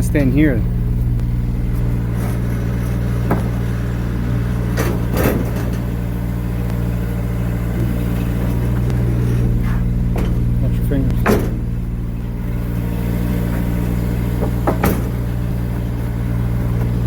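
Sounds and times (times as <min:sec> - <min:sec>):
engine running steadily: 0:00.0 - 0:17.0
short knocks: 0:07.8 - 0:12.0, 0:13.4 - 0:15.8.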